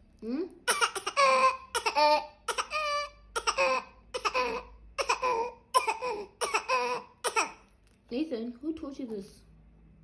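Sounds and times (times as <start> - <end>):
baby coughing: 0.7 - 7.7.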